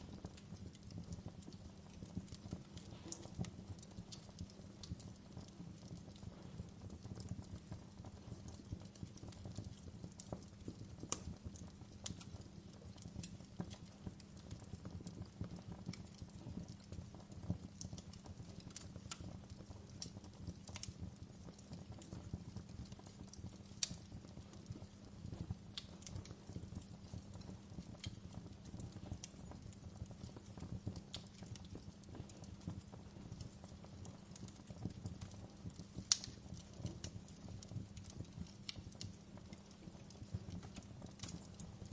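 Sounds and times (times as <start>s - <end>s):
wood fire crackling and popping: 0.0s - 41.9s.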